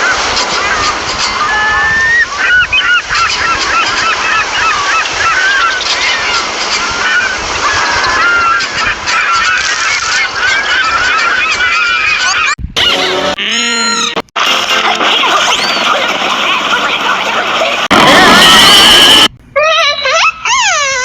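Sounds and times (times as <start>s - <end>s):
flock of birds calling: 1.4s - 12.6s.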